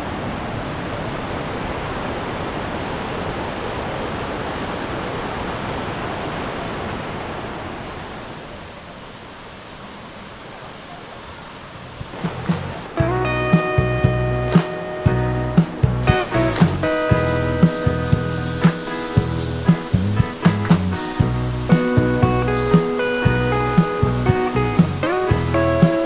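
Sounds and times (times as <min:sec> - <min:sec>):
stream water rushing: 0:11.6 - 0:26.0
plucked guitar: 0:12.2 - 0:26.0.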